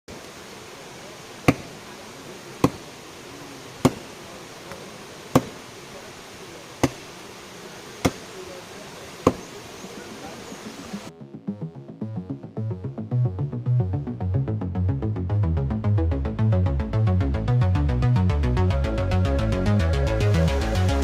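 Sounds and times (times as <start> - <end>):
steady hiss: 0.1 - 11.1
sharp strikes: 3.8 - 4.2, 5.3 - 5.6, 6.8 - 7.1.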